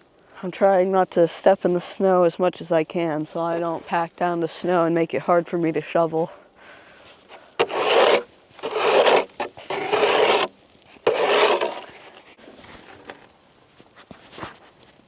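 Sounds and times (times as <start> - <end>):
snow shovel scraping on ice: 7.3 - 12.2.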